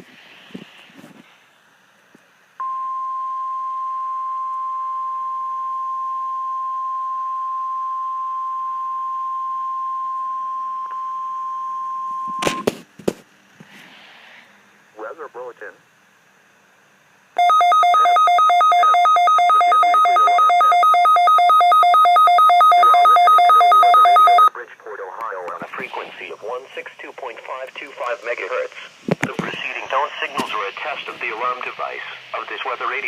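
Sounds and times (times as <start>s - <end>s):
steady alarm tone: 17.4s - 24.5s.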